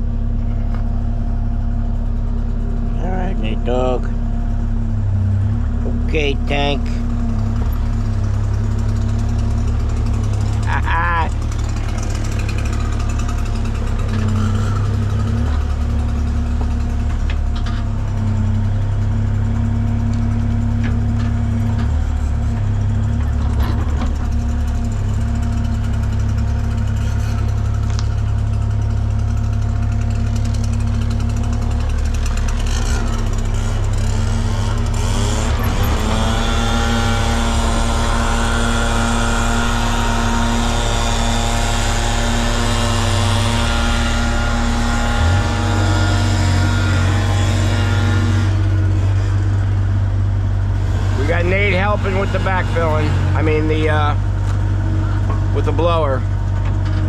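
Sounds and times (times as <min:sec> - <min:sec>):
machine engine droning: 0:00.0 - 0:57.0
motor whining: 0:25.6 - 0:49.4.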